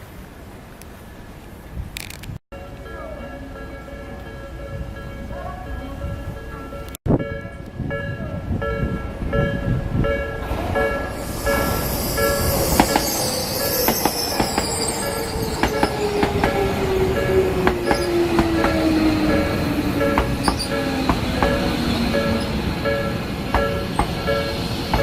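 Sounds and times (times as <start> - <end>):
train wheel squeal: 10.1 - 25.0
train motor whine: 10.4 - 25.0
wheels clicking over rail joints: 15.6 - 25.0.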